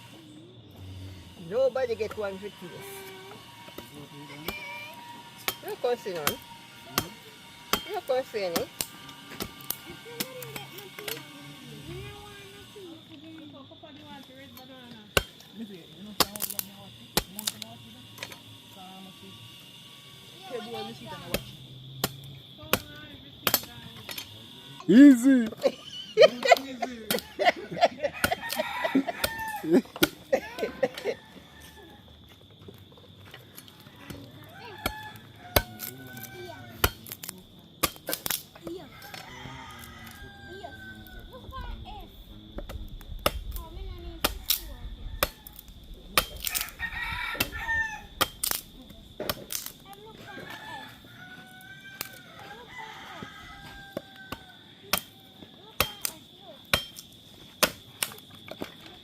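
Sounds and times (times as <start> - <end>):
hens clucking: 25.6 - 32.2
rooster crowing: 25.8 - 32.3, 33.7 - 37.0, 38.7 - 41.6, 44.5 - 48.3, 50.0 - 55.7.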